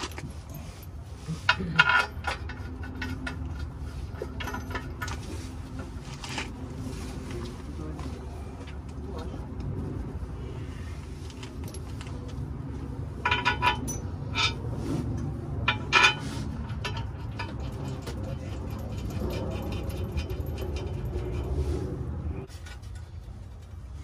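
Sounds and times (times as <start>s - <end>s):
metal clinks: 0.0s - 5.2s, 13.2s - 14.6s, 15.6s - 21.8s.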